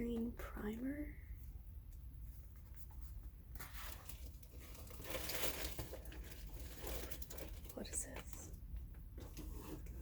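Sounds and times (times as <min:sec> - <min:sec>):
packaging rustling and crinkling: 0:02.8 - 0:10.0.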